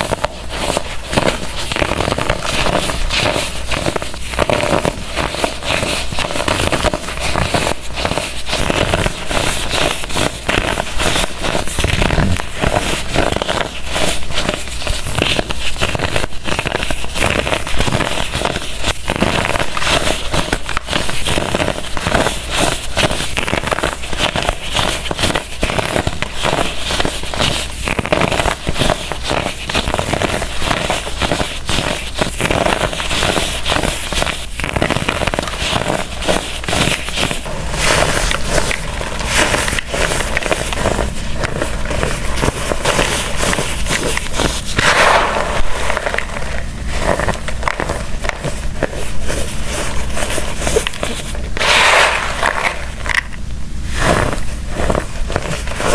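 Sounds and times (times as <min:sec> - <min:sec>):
blocks being crushed crunching: 0:11.8 - 0:12.6.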